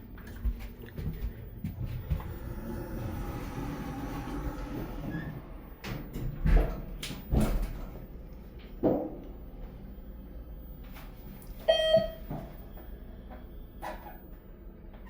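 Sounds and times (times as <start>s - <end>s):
elevator humming: 0.0s - 15.0s
sliding doors clunking: 1.9s - 7.9s.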